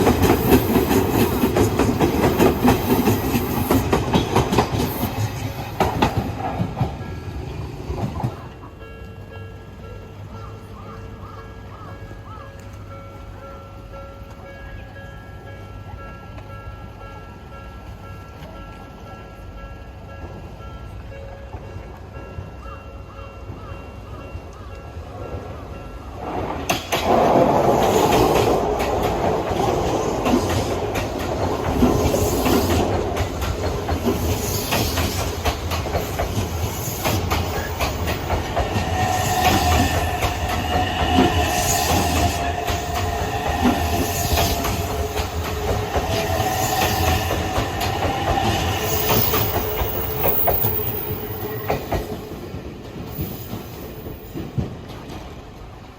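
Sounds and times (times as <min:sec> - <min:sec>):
train rumbling past: 0:00.0 - 0:55.9
wheels clattering over rail joints: 0:26.2 - 0:55.5
steady high tone: 0:37.2 - 0:51.7.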